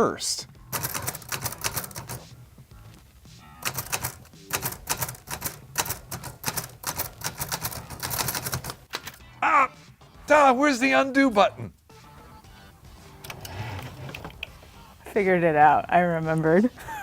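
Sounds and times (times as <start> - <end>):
typewriter keys clacking: 0.7 - 2.3, 3.6 - 9.2.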